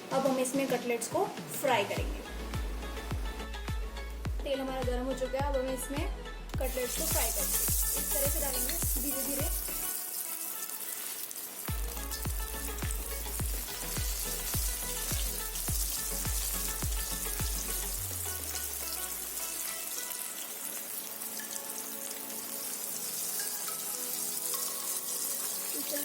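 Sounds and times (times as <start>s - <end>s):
background music with deep beat: 1.4s - 9.9s, 11.7s - 20.2s
cutlets sizzling in hot oil: 6.6s - 26.0s.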